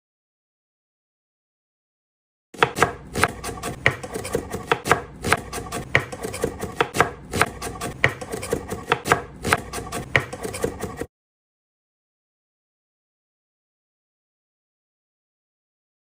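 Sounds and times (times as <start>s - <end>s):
knife chopping onion on board: 2.6s - 11.1s.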